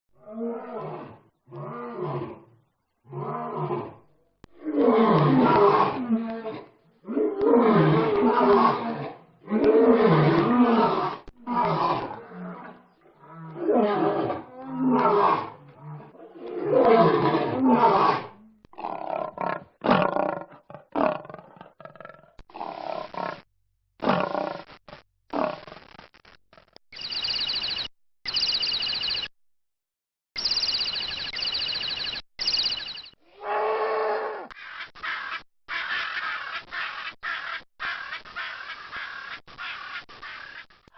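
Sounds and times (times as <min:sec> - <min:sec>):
lion roaring: 0:03.1 - 0:23.4
bird trilling: 0:27.0 - 0:29.3, 0:30.4 - 0:33.2.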